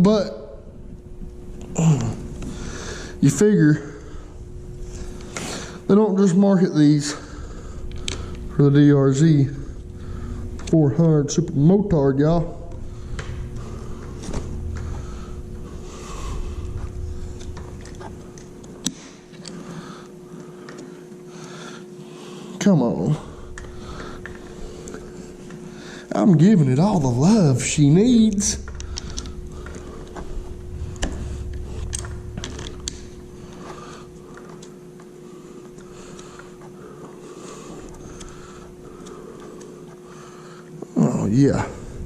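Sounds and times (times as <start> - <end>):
low rumble: 0.0 - 20.3, 23.2 - 36.8, 41.5 - 42.0
faint steady hum: 0.0 - 42.0.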